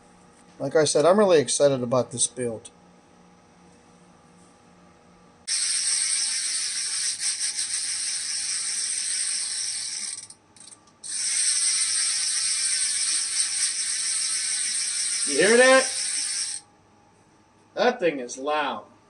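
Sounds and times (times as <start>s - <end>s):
bicycle freewheel ratcheting buzz: 5.5s - 16.6s.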